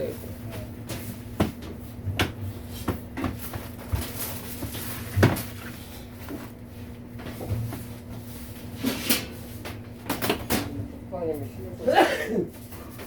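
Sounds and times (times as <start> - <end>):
steady low hum: 0.0 - 13.0
kitchen items clattering: 2.8 - 6.6.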